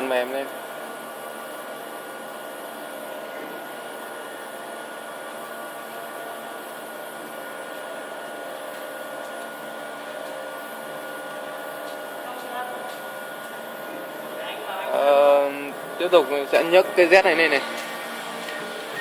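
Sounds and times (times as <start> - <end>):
machinery whirring hum: 0.0 - 19.0
thin high whine: 13.8 - 19.0.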